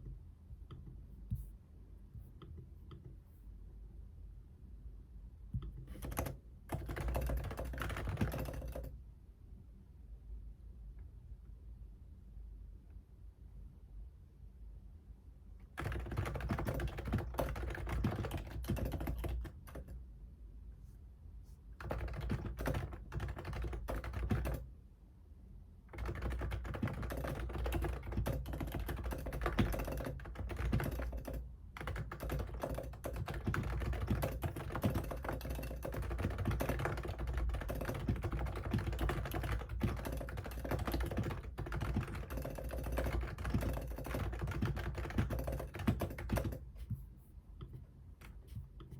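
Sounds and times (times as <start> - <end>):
fast typing on keyboard: 5.6 - 9.0, 15.8 - 20.0, 21.8 - 24.7, 25.9 - 47.0.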